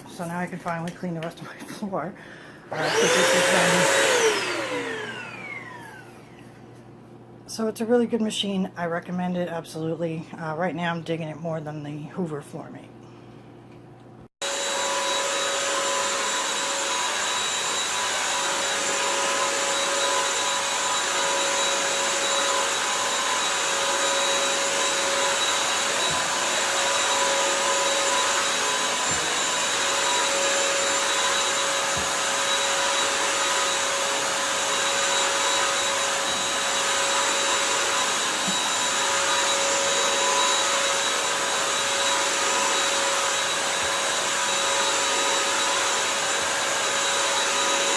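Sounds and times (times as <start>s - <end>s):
vacuum cleaner motor whine: 2.6s - 6.7s, 14.4s - 47.9s.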